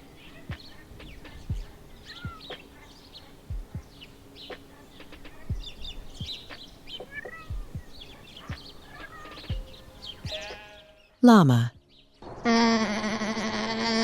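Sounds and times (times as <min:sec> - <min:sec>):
small birds chirping: 0:00.0 - 0:12.3
soft low thuds: 0:01.3 - 0:02.5, 0:03.5 - 0:04.0, 0:05.4 - 0:06.7, 0:07.4 - 0:08.7.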